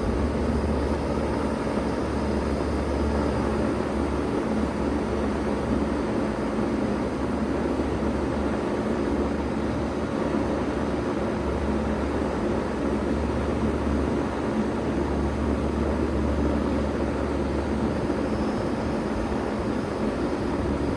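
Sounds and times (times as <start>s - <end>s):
heat pump running: 0.0s - 4.8s.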